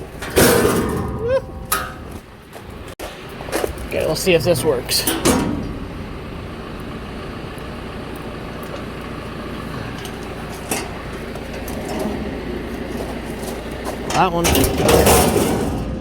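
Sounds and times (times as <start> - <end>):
vehicle engine idling: 0.0 - 16.0.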